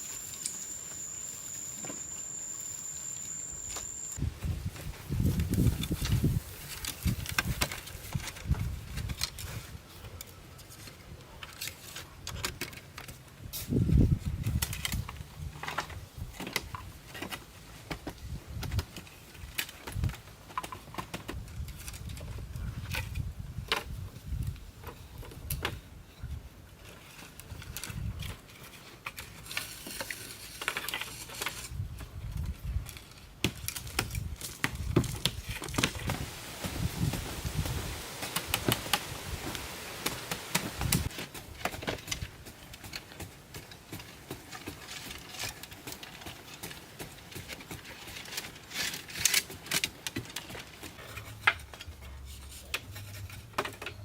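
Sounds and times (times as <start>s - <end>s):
rustling: 26.7s - 54.0s.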